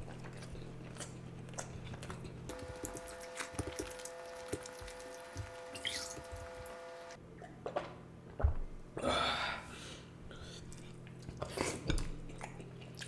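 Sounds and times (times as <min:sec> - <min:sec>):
wet chewing sounds: 0:00.0 - 0:06.7, 0:10.6 - 0:13.0.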